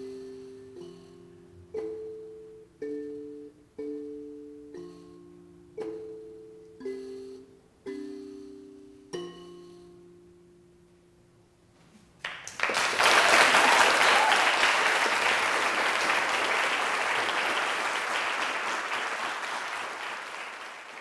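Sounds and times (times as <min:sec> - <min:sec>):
audience applause: 0:12.2 - 0:21.0.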